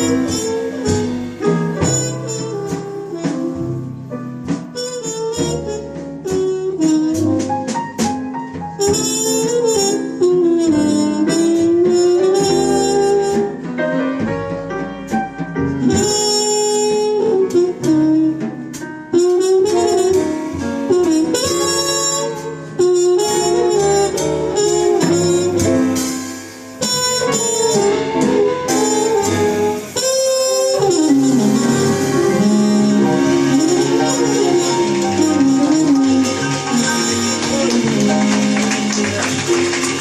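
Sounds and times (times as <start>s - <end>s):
drums with ringing cymbals: 0.0s - 3.8s, 23.8s - 38.6s
bass: 0.0s - 40.0s
horn playing melody: 0.0s - 40.0s.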